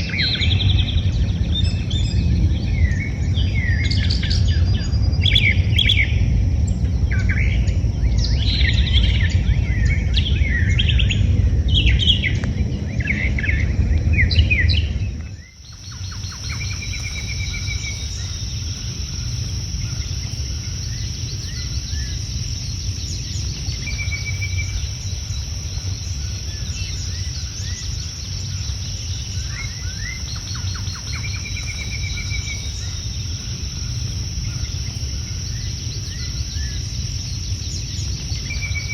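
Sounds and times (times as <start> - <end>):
birds singing and chirping: 0.0 - 38.9
insects buzzing: 0.0 - 38.9
low rumble: 0.0 - 38.9.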